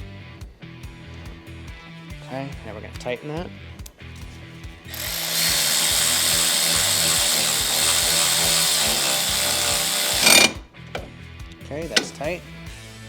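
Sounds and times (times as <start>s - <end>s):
handheld power tool driving bolt: 4.9s - 11.2s, 11.9s - 12.2s.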